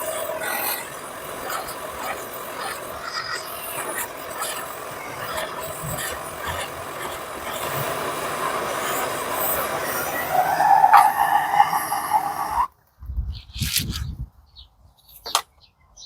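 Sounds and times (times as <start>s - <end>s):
blowtorch flame hissing: 0.0s - 12.7s.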